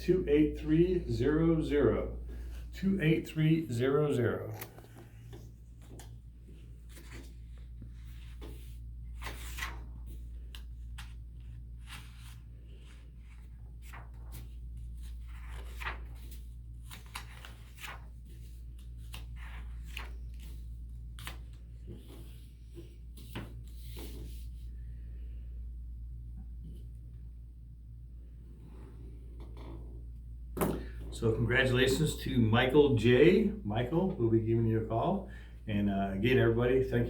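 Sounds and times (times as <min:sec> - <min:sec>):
low electrical hum: 0:00.0 - 0:37.0
paper rustling and crinkling: 0:04.5 - 0:24.6.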